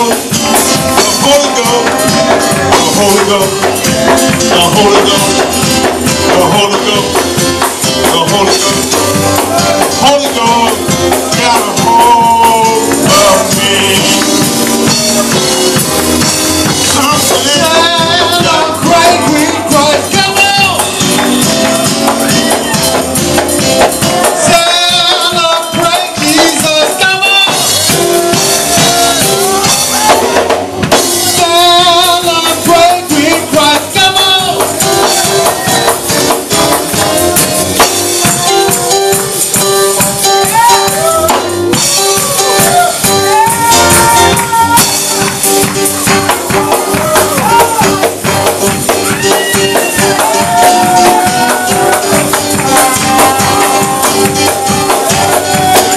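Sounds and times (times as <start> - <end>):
held chords: 0.0 - 55.9
tambourines and drums: 0.0 - 55.9
voices singing and calling out: 23.7 - 55.9.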